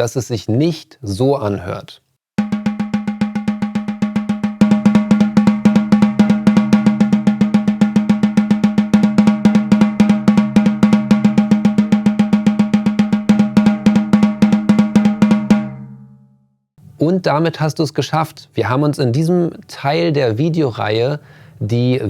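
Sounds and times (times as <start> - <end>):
snare drum roll: 2.4 - 16.0.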